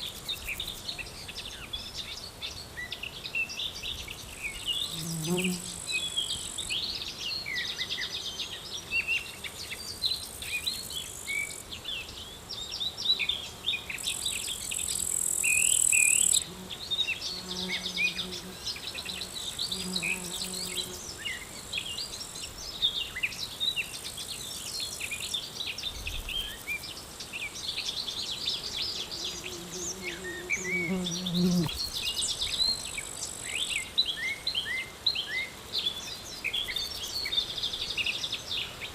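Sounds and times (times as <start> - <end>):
small birds chirping: 3.5 - 33.9
honeybee buzzing by: 4.7 - 6.7, 14.4 - 21.9, 28.5 - 32.9
insects trilling: 14.0 - 25.3, 28.7 - 33.8.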